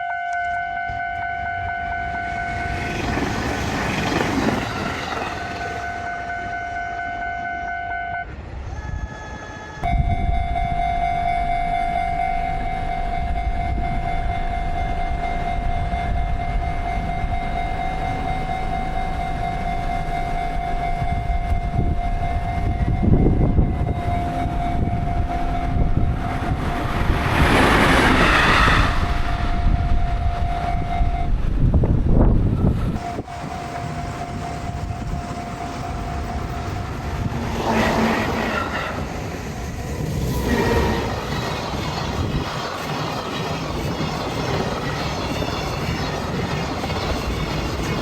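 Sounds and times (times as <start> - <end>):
train rumbling past: 0.0 - 48.0.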